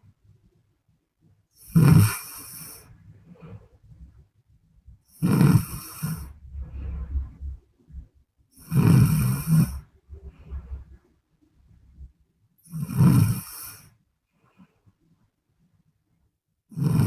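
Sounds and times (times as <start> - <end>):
woman snoring loudly: 1.6 - 2.8, 5.1 - 6.3, 8.6 - 9.8, 12.7 - 13.9, 16.7 - 17.0
soft breathing: 1.6 - 4.2, 5.0 - 12.1, 12.7 - 15.1.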